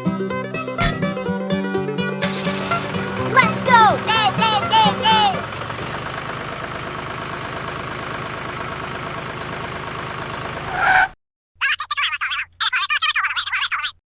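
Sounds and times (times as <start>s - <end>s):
vehicle engine running: 2.2s - 11.1s.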